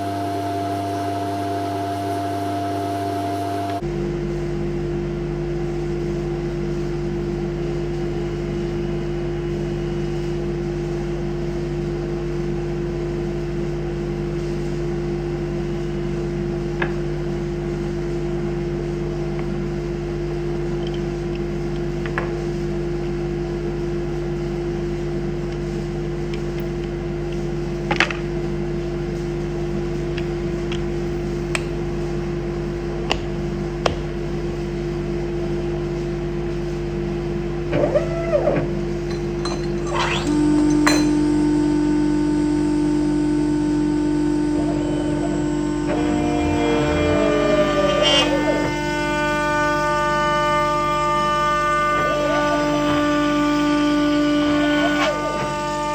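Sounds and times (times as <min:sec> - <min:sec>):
router spindle humming: 0:00.0 - 0:04.2, 0:31.5 - 0:55.9.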